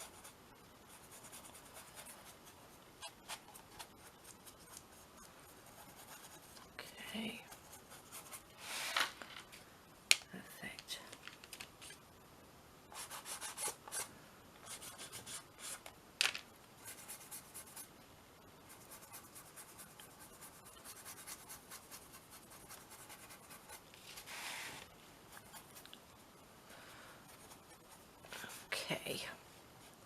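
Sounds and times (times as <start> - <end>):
colour stick scratching on paper: 0.0 - 6.7, 7.3 - 8.5, 18.7 - 26.0, 27.2 - 28.8.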